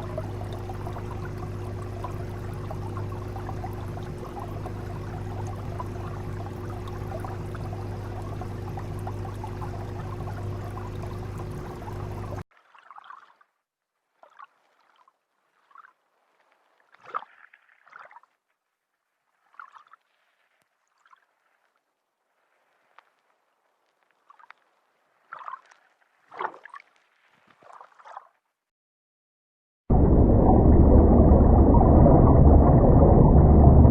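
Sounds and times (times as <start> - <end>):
underwater bubbly gurgling: 0.0 - 12.4, 29.9 - 33.9.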